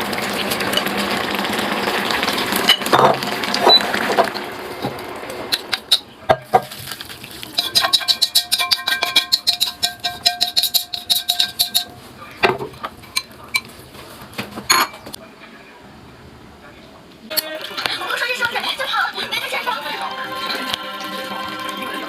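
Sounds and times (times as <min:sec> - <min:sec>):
metal utensil clinking in metal bowl: 0:07.4 - 0:13.7.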